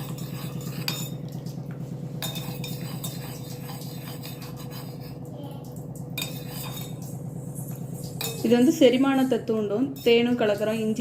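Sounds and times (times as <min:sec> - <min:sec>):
spoon clinking against cup: 0:02.2 - 0:04.4.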